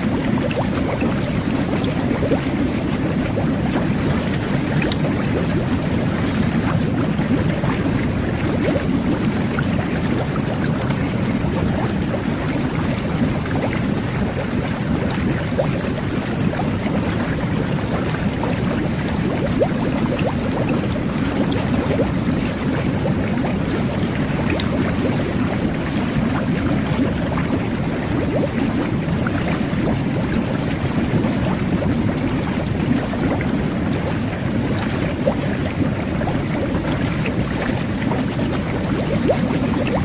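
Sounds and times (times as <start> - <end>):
bubbles popping: 0.0 - 40.0
water jets churning bathwater: 0.0 - 40.0.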